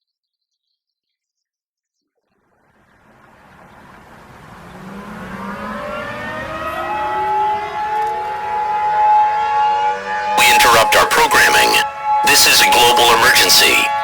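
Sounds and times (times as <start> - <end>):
civil defense sirens winding up: 3.2 - 14.0.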